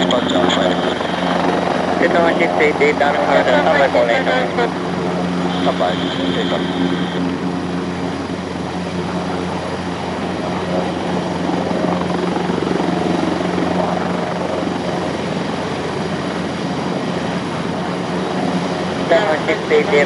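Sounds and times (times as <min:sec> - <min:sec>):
rotor turning with low hum: 0:00.0 - 0:19.8
helicopter turbines whining: 0:00.0 - 0:20.0.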